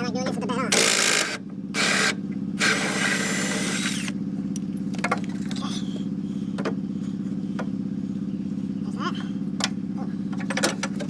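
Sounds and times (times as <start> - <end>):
low machine hum: 0.0 - 11.0
power tool running: 0.7 - 4.2.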